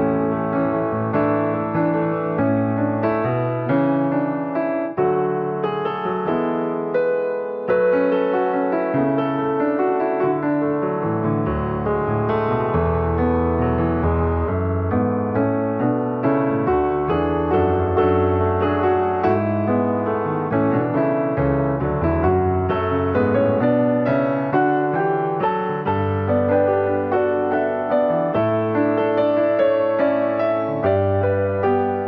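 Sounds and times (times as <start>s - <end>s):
piano music: 0.0s - 32.0s.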